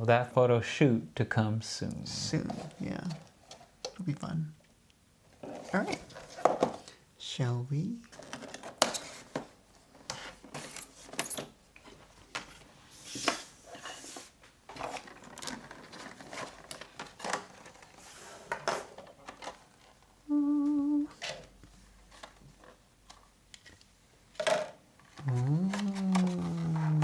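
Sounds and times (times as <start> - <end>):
packaging crinkling and rustling: 14.8 - 20.1.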